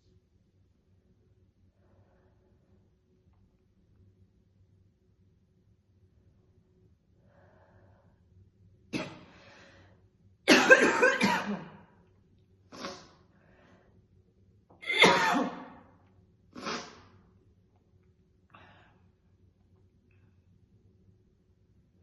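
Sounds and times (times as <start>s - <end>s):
woman coughing harshly: 10.5s - 11.8s, 14.8s - 15.7s.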